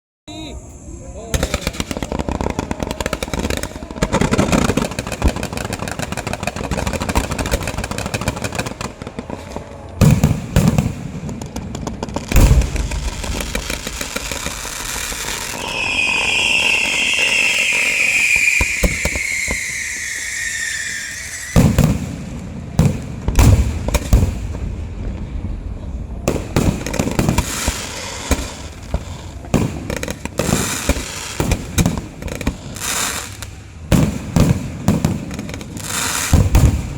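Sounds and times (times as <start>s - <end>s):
firework falling whistle: 0.3s - 10.9s, 12.3s - 24.4s
firecrackers crackling: 0.4s - 36.9s
fireworks booming: 0.4s - 36.9s.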